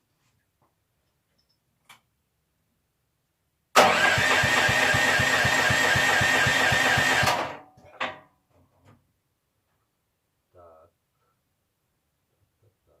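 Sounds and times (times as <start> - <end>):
engine cranking by starter: 3.8 - 7.6.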